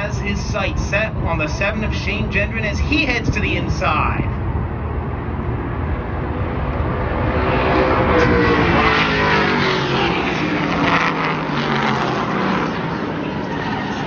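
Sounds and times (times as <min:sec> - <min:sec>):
race cars passing at speed: 0:04.3 - 0:14.0.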